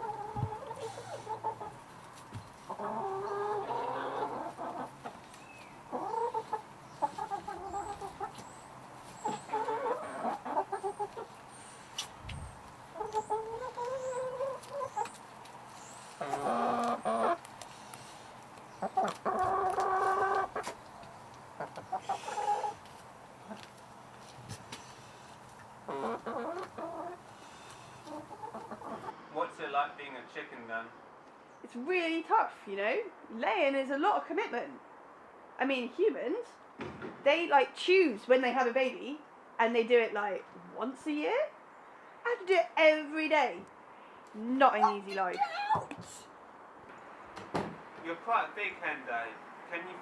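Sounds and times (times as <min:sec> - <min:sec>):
hen clucking and cackling: 0:00.0 - 0:01.9, 0:02.6 - 0:11.6, 0:12.4 - 0:15.2, 0:16.0 - 0:17.5, 0:18.7 - 0:20.8, 0:21.5 - 0:23.7, 0:25.5 - 0:29.2.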